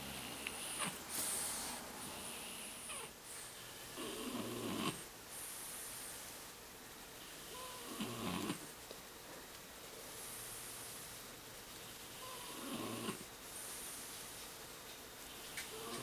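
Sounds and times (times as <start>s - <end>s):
dog snoring with rattle: 0.0s - 6.3s, 7.4s - 8.7s, 12.1s - 14.1s, 15.3s - 16.0s.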